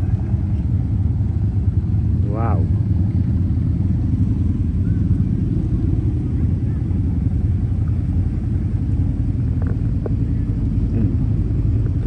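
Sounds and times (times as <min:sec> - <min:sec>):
steady low rumble: 0:00.0 - 0:12.0.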